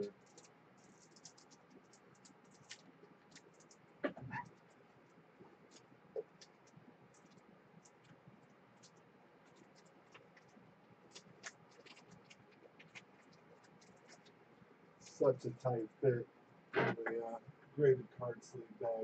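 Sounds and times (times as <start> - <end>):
plastic sleeve scratching and clicking: 0.0 - 4.8, 8.8 - 14.3.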